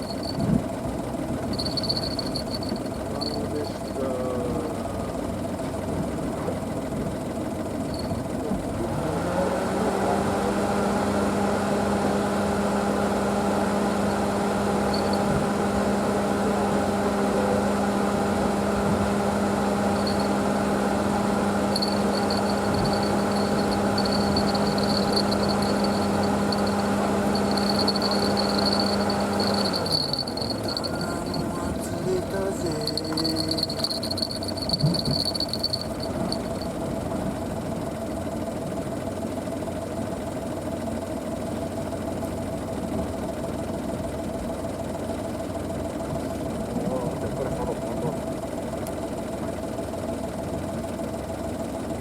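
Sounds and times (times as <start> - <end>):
motor humming: 1.4 - 4.0, 13.2 - 16.0, 18.1 - 37.0.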